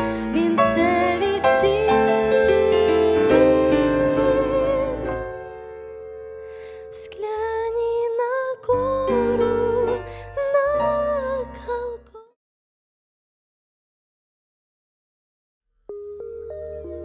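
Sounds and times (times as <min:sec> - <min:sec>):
slow hymn music with piano: 0:00.0 - 0:12.2
wavering melody line: 0:00.3 - 0:05.3, 0:15.9 - 0:17.0.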